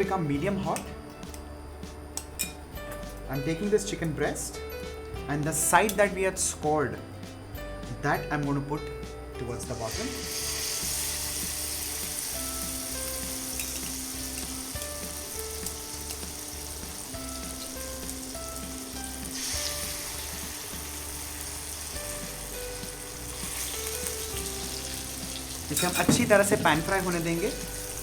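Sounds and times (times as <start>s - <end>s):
soft background music with beat: 0.0s - 28.0s
chicken sizzling in a pan: 9.8s - 28.0s.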